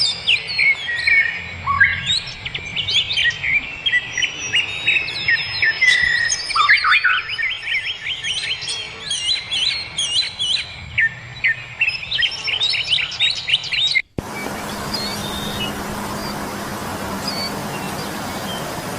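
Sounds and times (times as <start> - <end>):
birds chirping and twittering: 0.0 - 18.9
steady hiss with low hum: 14.2 - 18.9.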